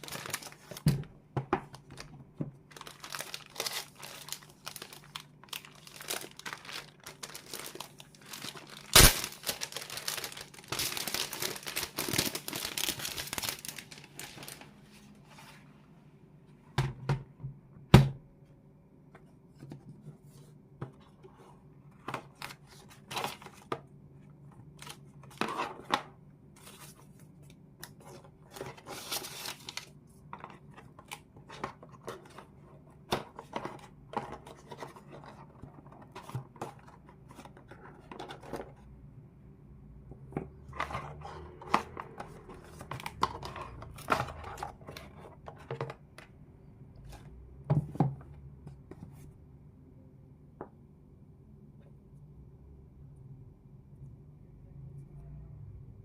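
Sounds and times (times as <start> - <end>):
packaging tearing: 0.0 - 0.8, 2.7 - 14.6
packaging rustling and clicking: 2.7 - 14.7.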